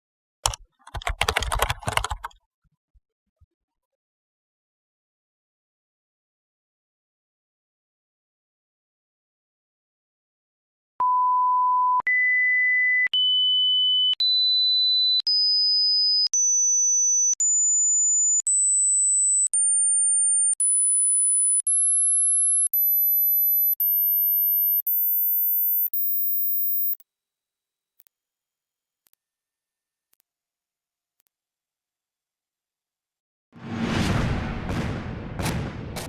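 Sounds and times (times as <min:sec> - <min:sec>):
rising sine tone beeps: 0:18.4 - 0:27.0.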